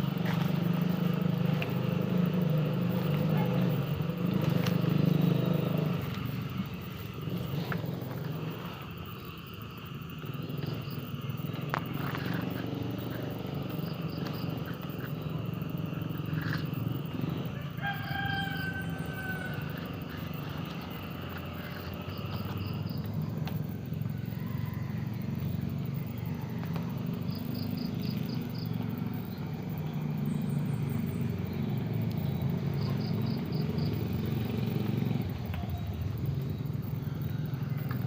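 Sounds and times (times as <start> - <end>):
steady low hum: 0.0 - 38.0
rooster crowing: 17.4 - 20.7, 24.1 - 27.2.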